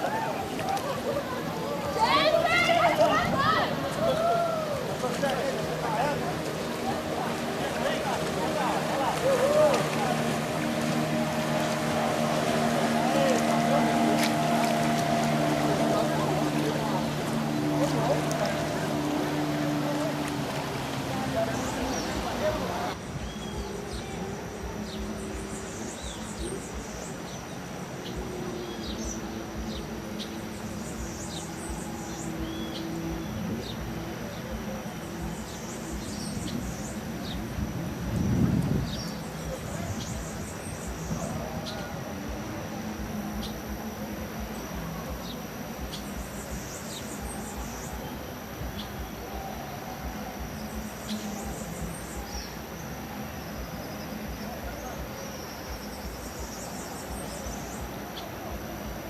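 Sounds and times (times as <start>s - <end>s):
background hiss and rumble: 0.0s - 59.0s
birds chirping: 0.0s - 59.0s
high insect whine: 5.8s - 59.0s.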